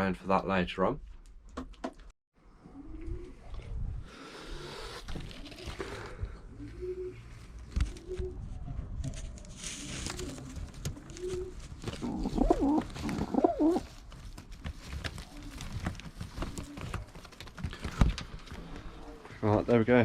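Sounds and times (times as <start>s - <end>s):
pigeons cooing: 2.5s - 14.1s.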